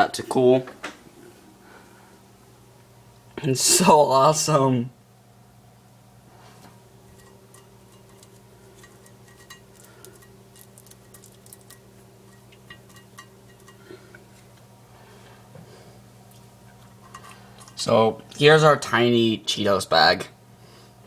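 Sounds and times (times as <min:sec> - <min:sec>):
faint electrical hum: 0:00.0 - 0:21.0
small ticks and clicks: 0:07.2 - 0:14.7.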